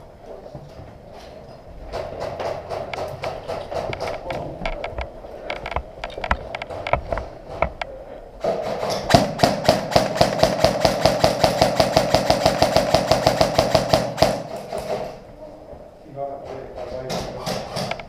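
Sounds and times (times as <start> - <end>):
airsoft gun full-auto burst: 8.5 - 14.5.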